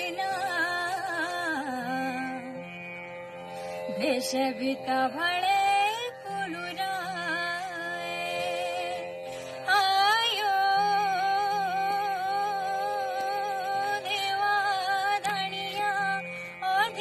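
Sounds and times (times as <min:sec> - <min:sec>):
person singing with vibrato: 0:03.9 - 0:17.0.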